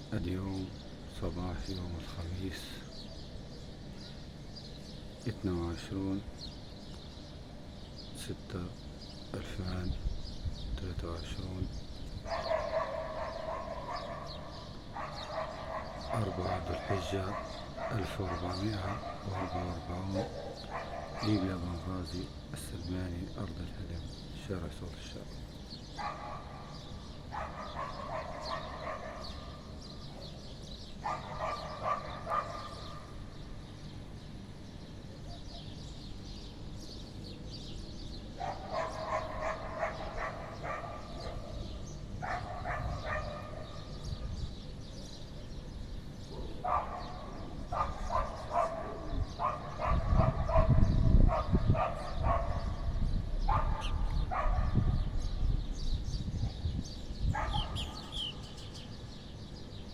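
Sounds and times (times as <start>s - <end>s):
dog barking: 12.2s - 21.8s, 26.0s - 30.4s, 31.0s - 33.2s, 38.4s - 44.3s, 46.3s - 55.2s, 57.3s - 58.5s.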